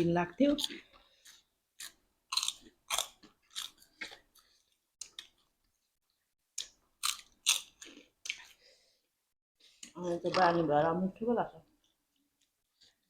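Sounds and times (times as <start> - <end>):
person chewing food: 0.5 - 10.0, 11.7 - 13.0.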